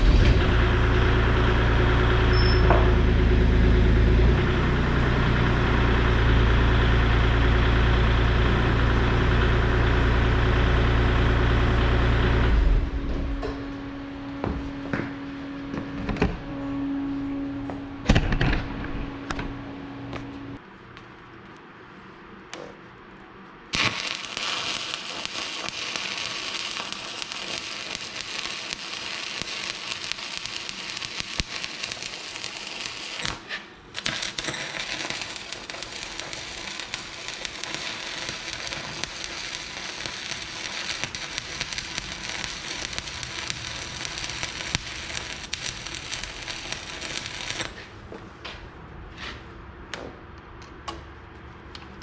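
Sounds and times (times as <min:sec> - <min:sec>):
welding arc crackling: 0:23.7 - 0:48.0.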